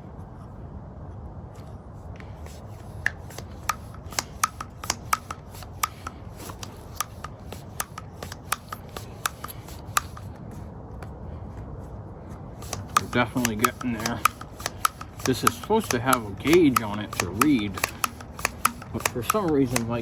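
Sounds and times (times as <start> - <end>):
hand tire pump clicking: 2.4 - 10.6, 12.5 - 20.0.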